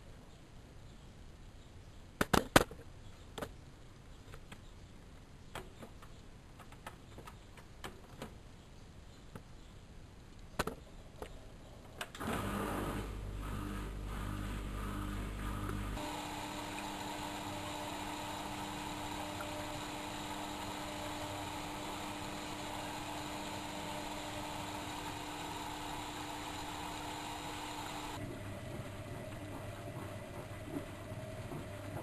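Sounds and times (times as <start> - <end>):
water running into machine: 16.0 - 32.0.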